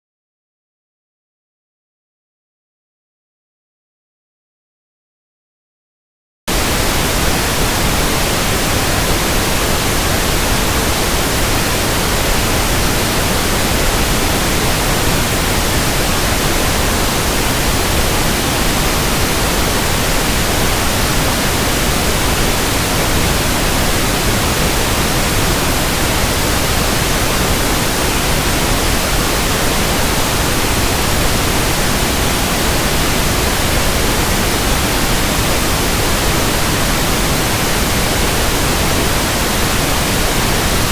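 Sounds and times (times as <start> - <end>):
pink noise hiss: 6.5 - 40.9.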